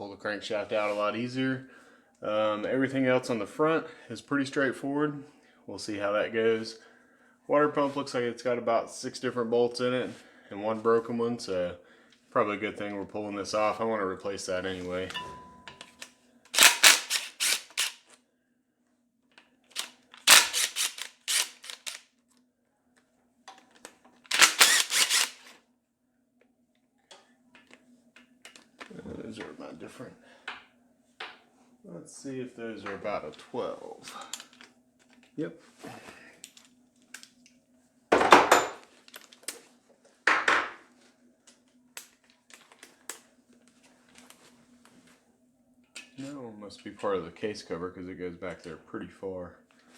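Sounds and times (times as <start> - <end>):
faint steady hum: 0.0 - 17.2
metal tools clattering: 15.1 - 16.1
impact wrench hammering: 16.6 - 17.9, 20.3 - 21.9.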